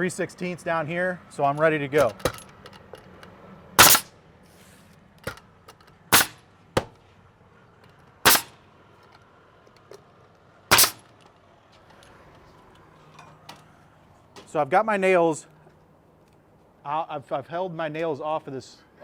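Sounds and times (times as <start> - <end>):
nail gun shots: 2.0 - 2.5, 3.8 - 4.1, 6.1 - 7.0, 8.3 - 8.6, 10.7 - 11.1.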